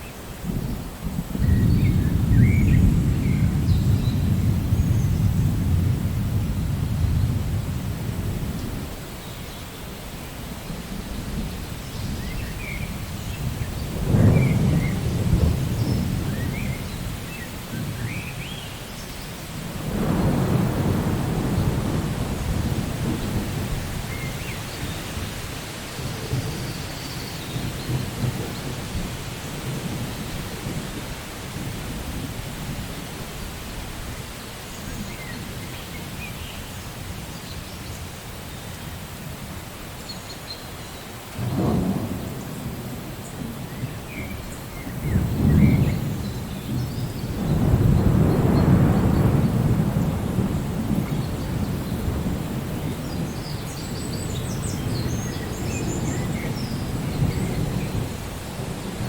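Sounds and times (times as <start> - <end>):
steady rain: 0.0 - 59.0
thunder rolling: 0.5 - 9.1, 10.7 - 18.4, 19.4 - 32.9, 41.4 - 59.0.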